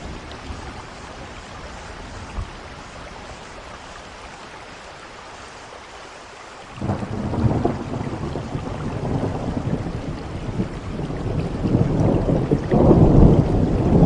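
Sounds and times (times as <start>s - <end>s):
steady rain: 0.0s - 14.0s
thunder rumbling: 6.8s - 14.0s.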